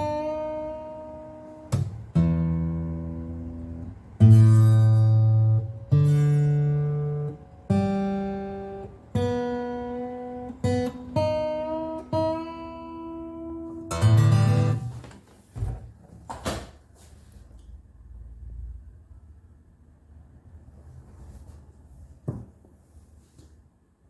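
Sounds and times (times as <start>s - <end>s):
acoustic guitar chords strummed: 0.0s - 15.2s.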